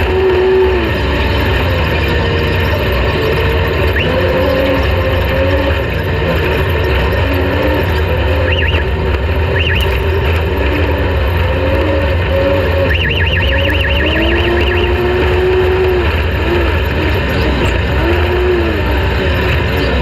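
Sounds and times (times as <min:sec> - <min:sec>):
race vehicle engine revving: 0:00.0 - 0:20.0
high warbling squeal: 0:07.5 - 0:20.0.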